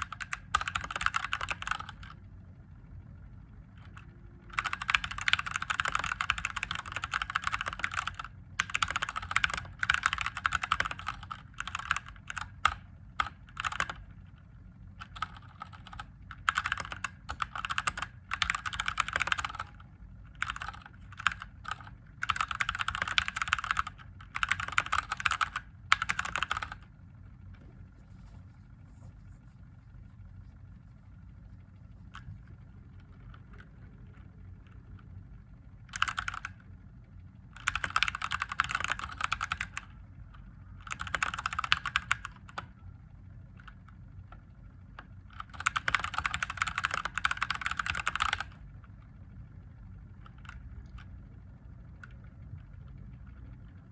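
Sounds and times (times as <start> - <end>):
mechanical keyboard typing: 0.0 - 2.2, 3.8 - 14.1, 15.0 - 26.9, 35.9 - 36.6, 37.6 - 39.9, 40.8 - 42.7, 45.0 - 48.6.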